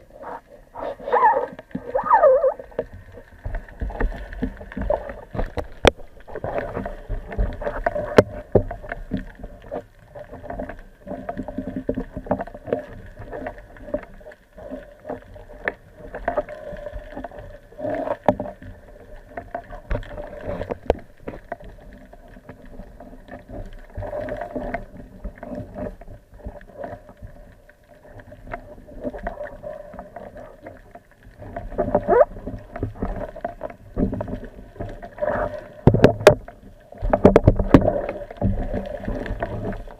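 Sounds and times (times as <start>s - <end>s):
water sloshing and gurgling: 0.0s - 39.9s.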